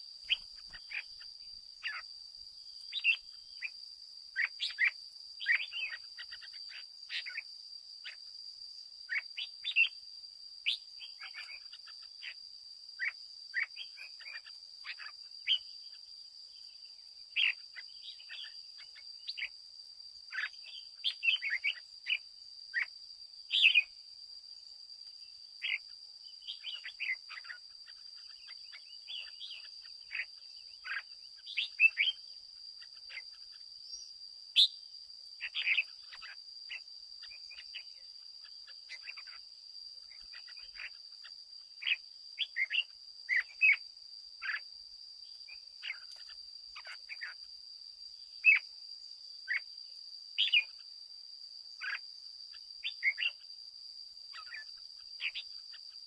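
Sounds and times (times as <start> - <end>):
faint high-pitched whine: 0.0 - 56.0
bird chirping and singing: 26.4 - 32.2.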